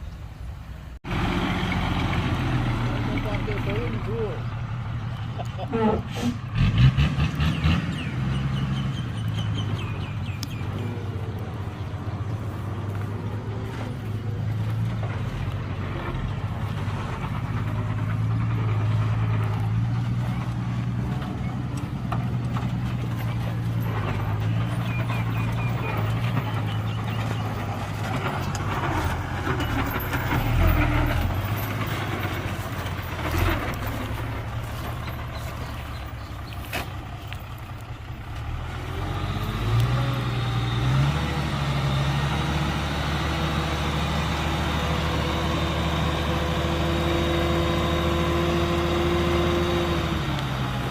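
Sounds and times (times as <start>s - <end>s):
heavy diesel engine running: 1.0s - 50.9s.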